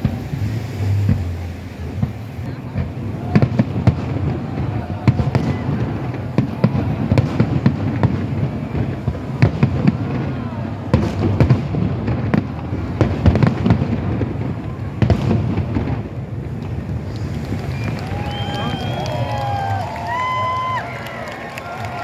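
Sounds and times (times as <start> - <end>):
low rumble: 0.0 - 7.0
fireworks bangs and crackles: 0.0 - 22.0.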